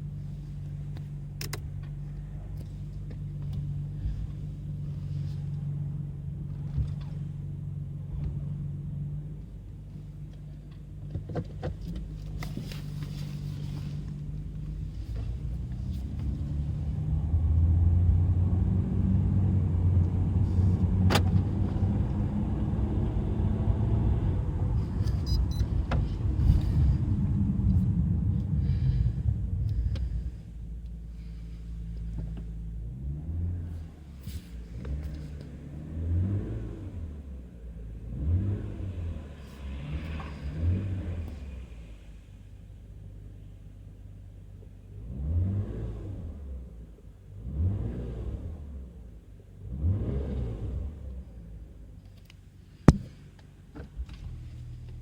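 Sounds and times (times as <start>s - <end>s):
car engine running: 0.0s - 35.8s.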